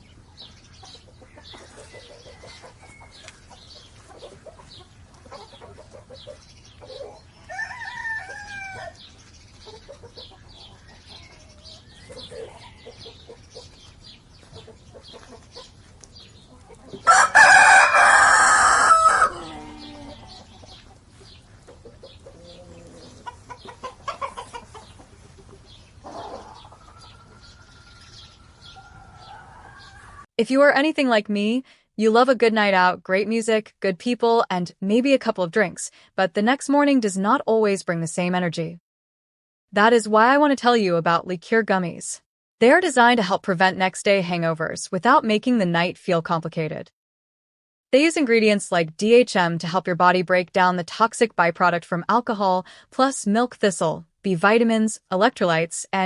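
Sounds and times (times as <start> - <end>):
small birds chirping: 0.0 - 17.1, 19.4 - 30.3
rooster crowing: 7.5 - 9.0, 17.0 - 20.4, 26.1 - 30.2.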